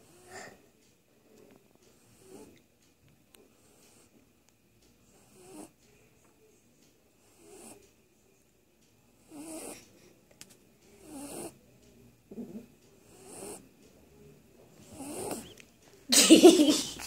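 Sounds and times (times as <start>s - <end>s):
quiet snoring: 1.9s - 2.6s, 5.1s - 5.8s, 7.2s - 7.9s, 9.2s - 9.9s, 11.0s - 11.6s, 12.3s - 13.7s, 14.8s - 15.6s.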